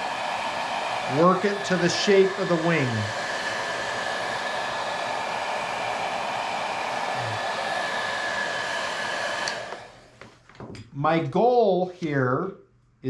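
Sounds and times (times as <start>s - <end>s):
hot-air blower running: 0.0s - 10.3s.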